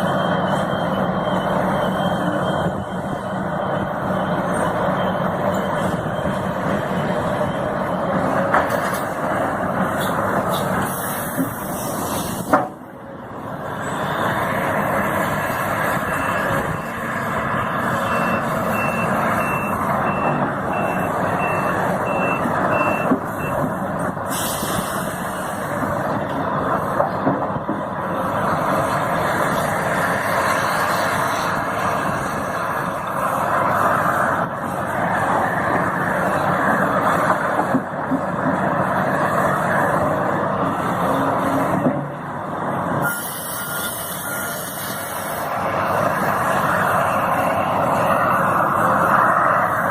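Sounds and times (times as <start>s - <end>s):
reversing alarm beeping: 0.0s - 8.5s, 15.8s - 23.6s, 43.0s - 45.1s, 46.2s - 48.6s
heavy diesel machinery running: 0.0s - 49.9s.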